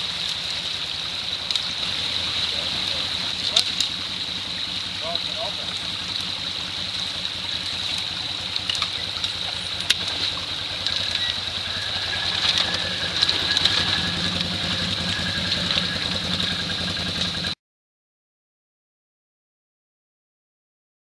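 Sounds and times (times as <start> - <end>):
vehicle engine running at low revs: 0.0 - 17.6
small clicks: 7.7 - 11.4.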